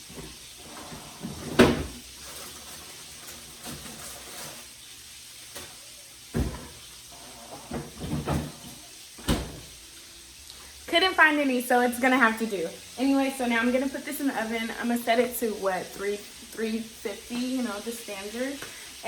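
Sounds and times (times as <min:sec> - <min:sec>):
cupboard doors opening and shutting: 0:00.0 - 0:04.6, 0:05.6 - 0:09.8
things moved about: 0:05.5 - 0:09.7.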